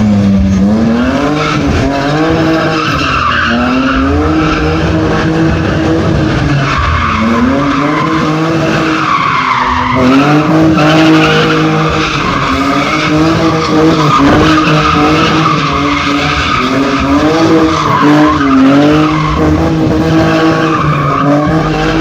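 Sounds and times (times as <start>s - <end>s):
car engine revving hard: 0.0s - 22.0s
tyres screeching: 2.5s - 22.0s.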